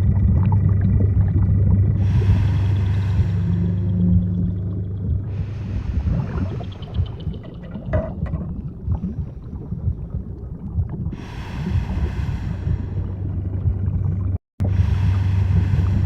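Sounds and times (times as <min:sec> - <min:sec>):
underwater low rumble: 0:00.0 - 0:16.0
hissing wash: 0:02.0 - 0:10.2.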